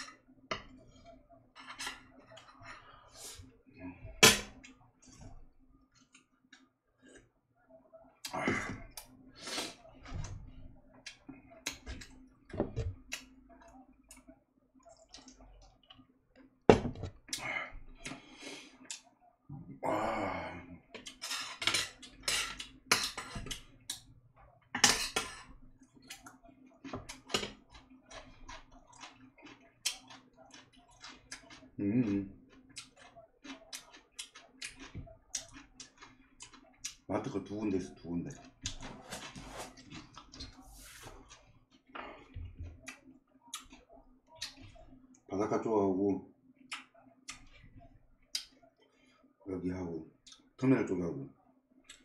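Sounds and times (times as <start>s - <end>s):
cutlery clinking on dishes: 1.6s - 2.6s, 21.0s - 23.6s, 24.8s - 25.5s.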